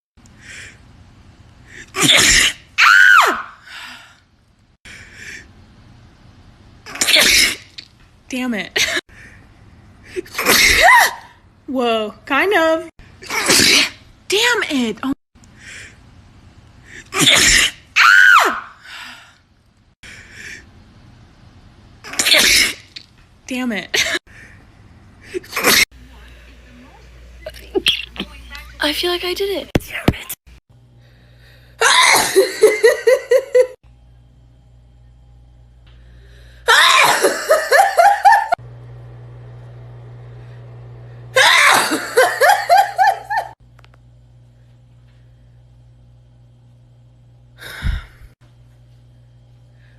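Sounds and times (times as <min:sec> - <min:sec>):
person sneezing: 0:01.8 - 0:02.7, 0:06.9 - 0:07.7, 0:13.2 - 0:14.0, 0:17.1 - 0:17.8, 0:22.1 - 0:22.9
low steady hum: 0:22.9 - 0:49.9.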